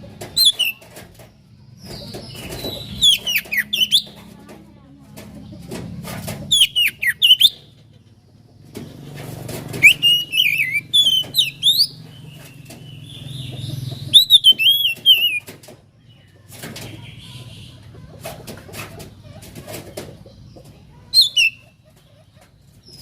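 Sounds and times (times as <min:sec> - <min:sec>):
bird singing whistled notes: 0:09.8 - 0:12.0, 0:14.0 - 0:15.4, 0:21.2 - 0:21.6.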